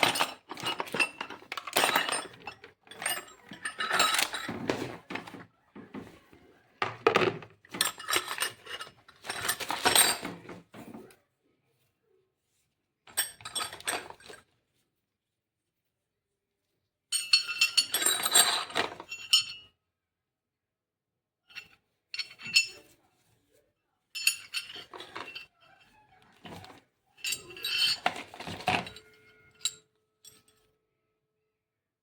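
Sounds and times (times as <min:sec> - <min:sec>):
metal and plastic parts clattering: 0:00.0 - 0:11.1, 0:13.1 - 0:14.5, 0:17.2 - 0:19.6, 0:21.6 - 0:23.0, 0:24.2 - 0:30.6.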